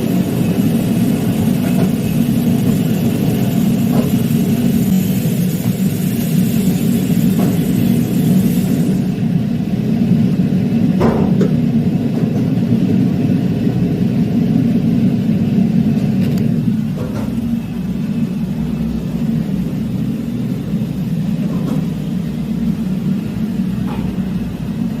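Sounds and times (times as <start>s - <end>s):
high hiss: 0.0s - 9.1s
low machinery rumble: 0.0s - 25.0s.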